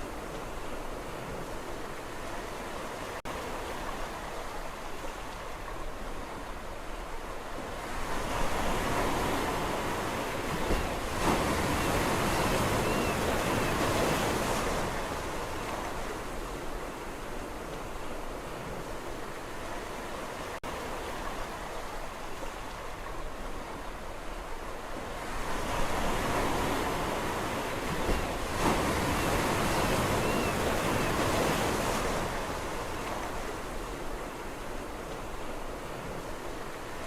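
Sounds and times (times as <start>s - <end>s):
sea waves washing on shore: 0.0s - 37.0s.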